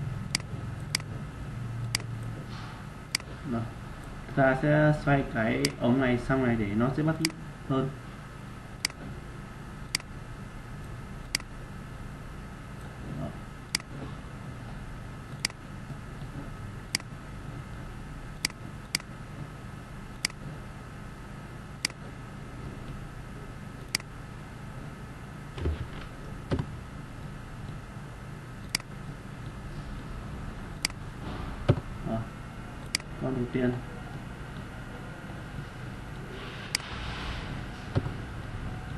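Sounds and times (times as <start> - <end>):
steady electrical hum: 0.0 - 38.9
computer mouse clicking: 0.3 - 1.1, 1.8 - 2.3, 8.8 - 9.0, 9.9 - 10.1, 11.2 - 11.5, 15.3 - 15.6, 18.4 - 19.1, 20.2 - 20.4, 21.8 - 22.0, 23.8 - 24.1, 28.6 - 29.6, 30.8 - 31.0, 32.8 - 33.1.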